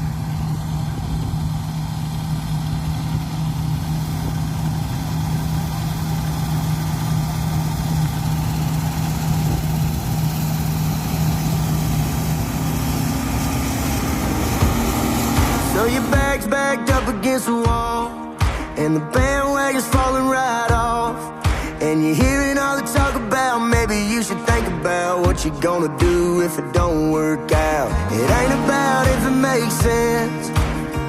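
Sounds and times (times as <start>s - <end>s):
rush of machine noise: 0.0s - 16.4s
combine harvester engine drone: 0.0s - 16.8s, 27.8s - 31.0s.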